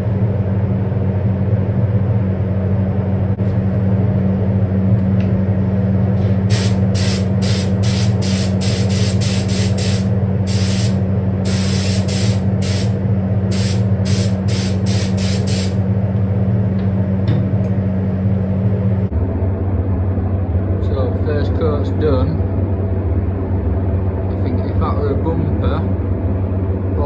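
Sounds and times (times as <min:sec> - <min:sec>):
fan droning: 0:00.0 - 0:27.0
paint spray gun hissing: 0:06.2 - 0:19.1.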